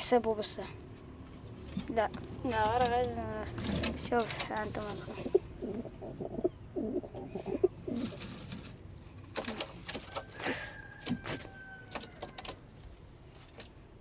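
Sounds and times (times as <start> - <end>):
pigeons cooing: 3.6 - 8.7.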